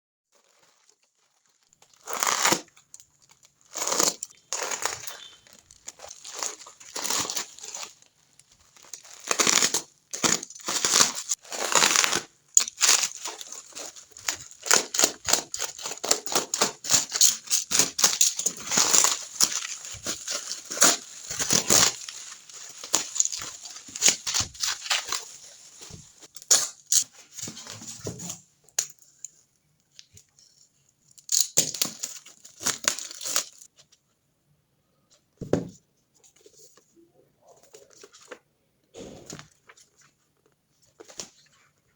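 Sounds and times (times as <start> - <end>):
packaging tearing and crinkling: 0.3 - 27.0, 31.3 - 33.7.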